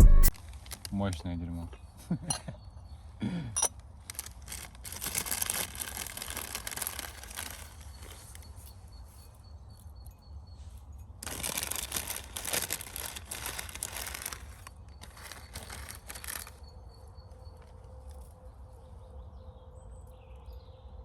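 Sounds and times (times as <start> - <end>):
rustling crinkling: 0.3 - 1.2, 3.8 - 9.3, 11.2 - 18.4.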